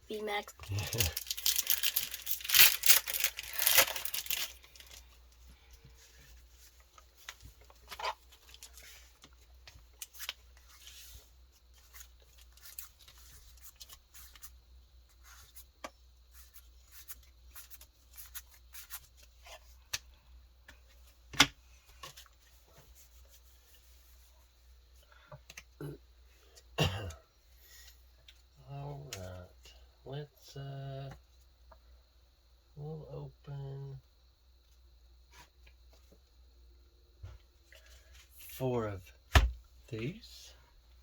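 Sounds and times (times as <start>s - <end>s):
foil wrapper tearing and crinkling: 0.7s - 5.0s
cards rustling and clicking: 0.7s - 5.1s, 6.7s - 11.2s, 11.8s - 14.6s.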